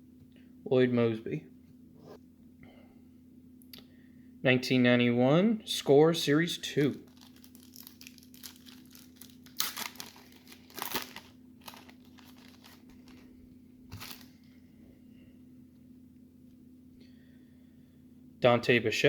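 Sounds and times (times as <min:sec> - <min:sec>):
wrapper crinkling and tearing: 0:06.7 - 0:14.4.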